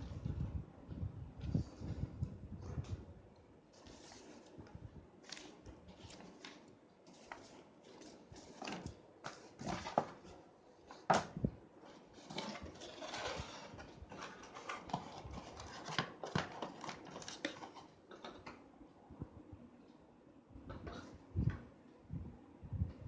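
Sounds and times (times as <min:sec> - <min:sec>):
packaging rustling: 0:12.2 - 0:18.2.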